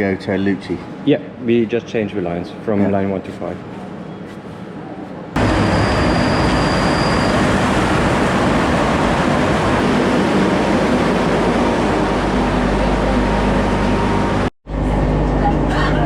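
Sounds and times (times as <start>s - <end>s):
train rail noise: 2.9s - 14.5s
high wheel squeal: 5.4s - 8.2s.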